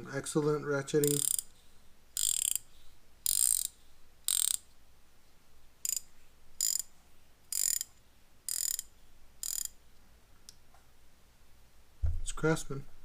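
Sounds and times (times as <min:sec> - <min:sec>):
ratcheting wrench clicking: 0:01.0 - 0:01.5, 0:02.2 - 0:04.7, 0:05.8 - 0:06.9, 0:07.5 - 0:07.9, 0:08.5 - 0:09.8.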